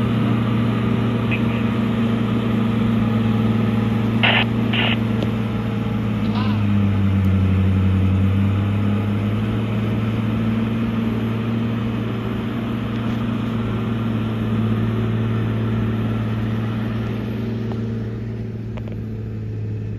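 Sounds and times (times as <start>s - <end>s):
diesel engine running under load: 0.0s - 19.9s.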